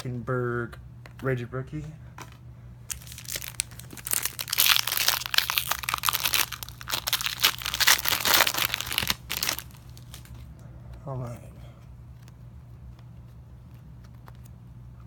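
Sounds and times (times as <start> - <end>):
wrapper crinkling: 2.9 - 10.5.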